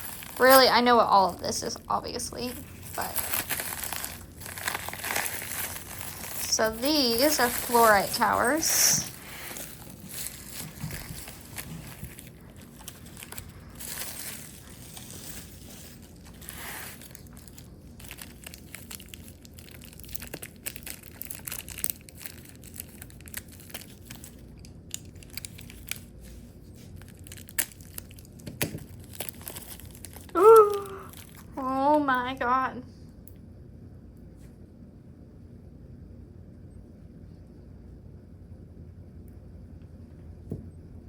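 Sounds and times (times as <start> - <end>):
packaging crinkling and tearing: 0.0 - 31.7
person exclaiming: 30.3 - 31.8.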